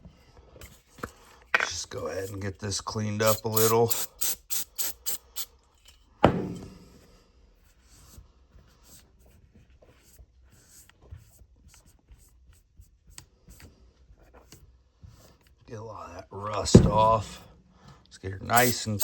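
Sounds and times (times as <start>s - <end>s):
knock: 6.2s - 6.9s, 16.8s - 17.2s.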